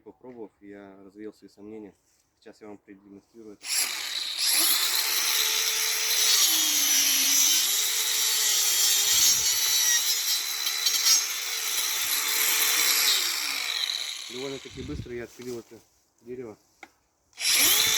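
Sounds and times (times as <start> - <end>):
angle grinder sawing through wood: 3.6 - 15.5, 17.4 - 17.9.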